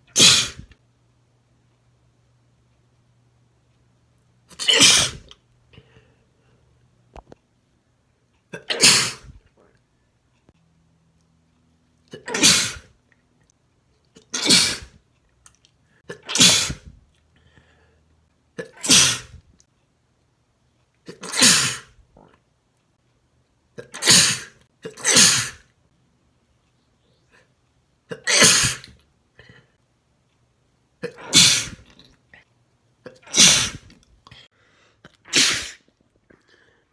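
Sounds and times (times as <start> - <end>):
man sneezing: 0.1 - 0.7, 4.6 - 5.3, 8.6 - 9.4, 12.2 - 12.9, 14.3 - 15.0, 16.2 - 16.9, 18.6 - 19.4, 21.1 - 21.9, 23.8 - 25.6, 28.1 - 28.9, 31.0 - 31.9, 33.1 - 33.9, 35.1 - 35.9.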